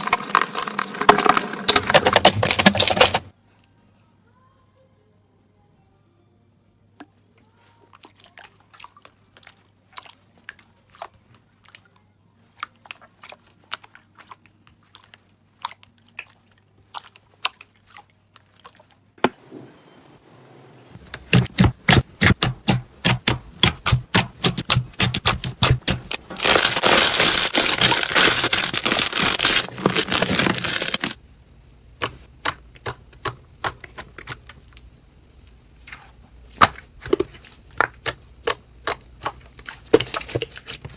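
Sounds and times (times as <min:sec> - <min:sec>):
slime crackling and popping: 0:21.3 - 0:31.2.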